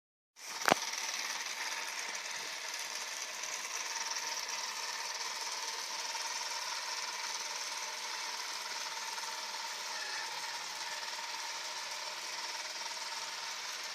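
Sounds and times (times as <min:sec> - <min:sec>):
robot vacuum cleaner whirring: 0:08.7 - 0:13.9.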